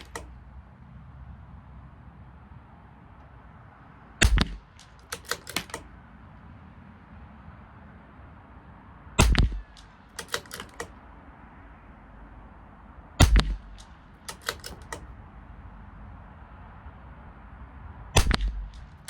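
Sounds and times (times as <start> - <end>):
rifle bolt clicking: 0.0 - 0.3, 4.2 - 5.9, 9.2 - 11.0, 13.2 - 15.1
rifle shots: 4.2 - 5.9, 9.2 - 11.0, 13.2 - 15.1, 18.2 - 19.0.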